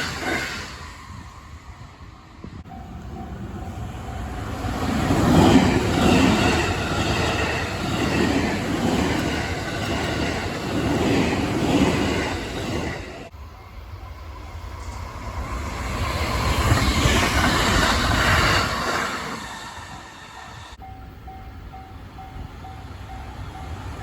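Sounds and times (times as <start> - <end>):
train wheels clickety-clack: 4.4 - 13.3.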